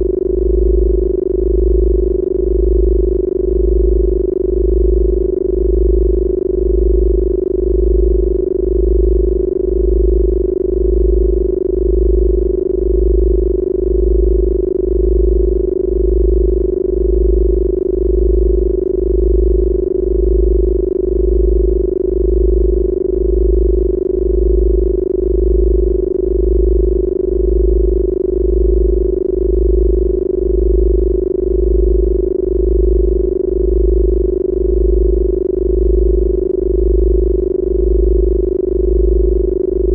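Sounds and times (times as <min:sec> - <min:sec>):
deep pulsing low tone: 0:00.0 - 0:39.9
steady mid-pitched hum: 0:00.0 - 0:39.9.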